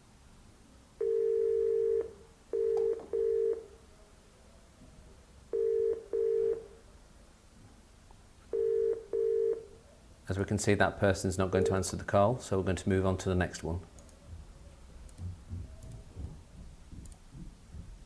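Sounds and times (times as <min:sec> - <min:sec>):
telephone ringing tone: 0:01.0 - 0:03.8, 0:05.5 - 0:06.7, 0:08.5 - 0:09.7.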